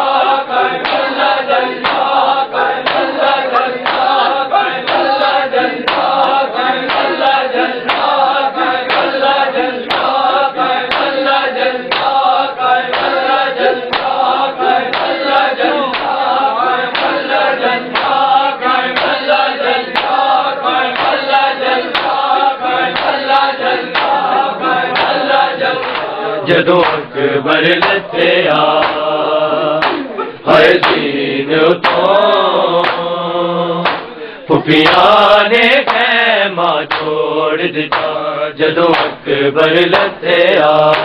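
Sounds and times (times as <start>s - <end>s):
group chanting: 0.0s - 41.0s
hands striking chest: 29.8s - 30.1s, 33.8s - 34.1s.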